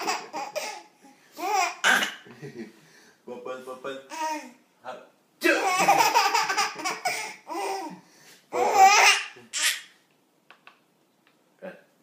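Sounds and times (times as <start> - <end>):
baby laughing: 0.0 - 1.8, 5.6 - 9.9.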